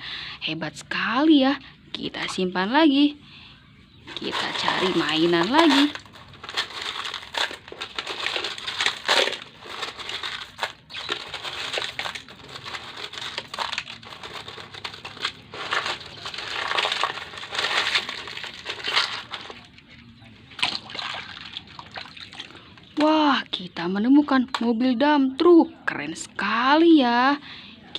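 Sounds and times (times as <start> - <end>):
gravel crunching and rattling: 4.0 - 20.6.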